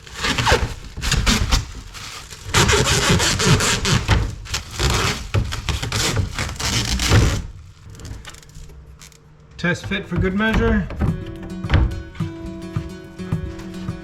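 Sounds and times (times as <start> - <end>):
wooden parts scraping: 0.0 - 12.8
light wooden knocks: 9.5 - 12.9.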